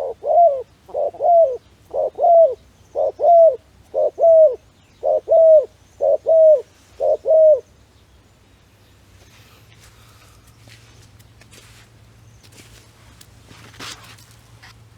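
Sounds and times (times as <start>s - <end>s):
dove cooing: 0.0s - 7.7s.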